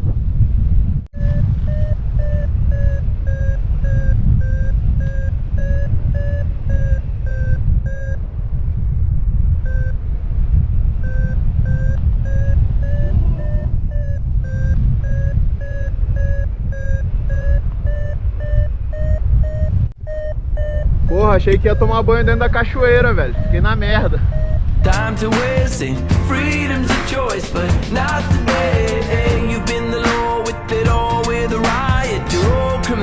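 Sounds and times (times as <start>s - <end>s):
wind rush on microphone: 0.0s - 24.9s
variometer beeping: 1.2s - 33.0s.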